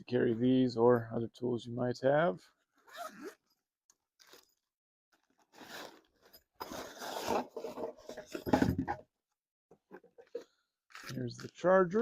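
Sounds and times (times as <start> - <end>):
packaging crinkling and scraping: 5.2 - 8.4.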